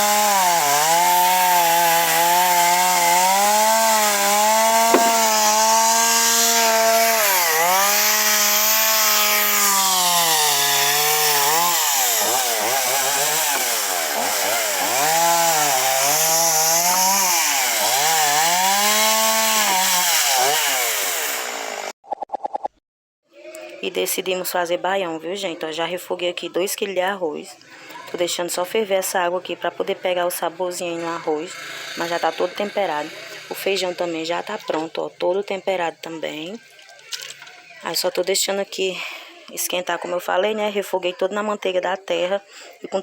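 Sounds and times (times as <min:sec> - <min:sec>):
chainsaw cutting wood: 0:00.0 - 0:21.9, 0:31.5 - 0:33.7.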